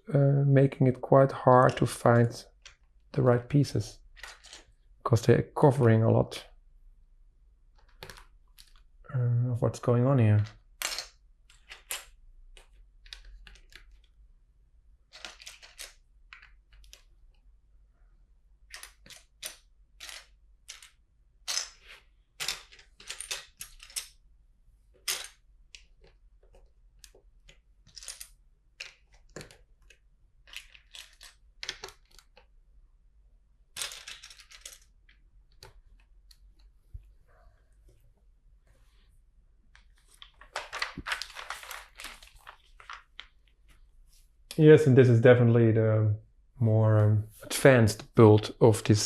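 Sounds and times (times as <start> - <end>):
plastic bricks clicking and rattling: 4.1 - 4.8, 15.1 - 17.1, 18.7 - 24.2, 25.0 - 32.5, 33.7 - 36.1.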